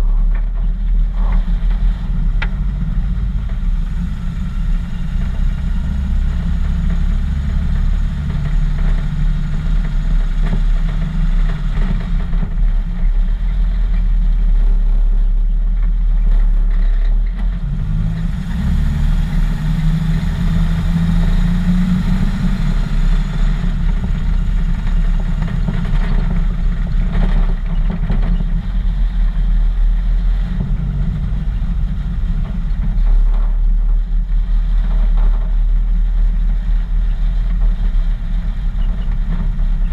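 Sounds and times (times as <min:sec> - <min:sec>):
truck engine rumbling: 0:00.0 - 0:39.9.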